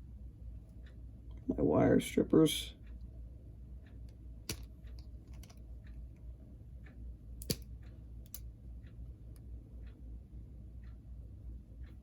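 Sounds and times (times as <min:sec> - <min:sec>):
wire strippers clicking and tapping: 0:03.8 - 0:06.2, 0:07.4 - 0:08.5.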